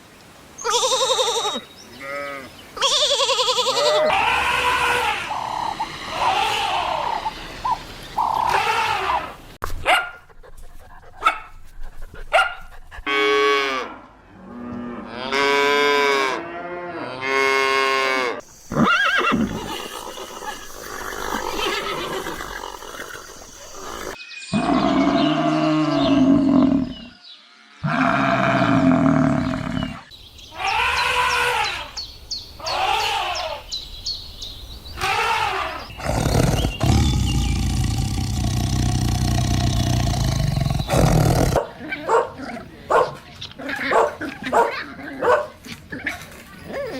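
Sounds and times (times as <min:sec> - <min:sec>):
animal calls: 0:00.6 - 0:09.4, 0:18.4 - 0:27.2, 0:27.8 - 0:32.0, 0:32.6 - 0:33.7, 0:35.0 - 0:46.9.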